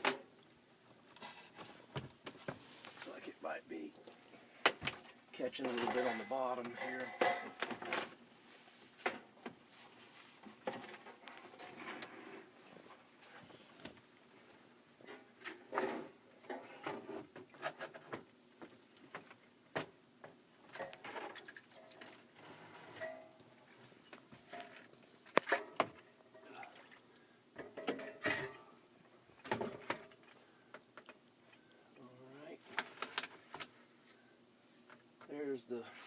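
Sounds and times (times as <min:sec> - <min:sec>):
metal scraping and knocking: 0:05.6 - 0:08.0.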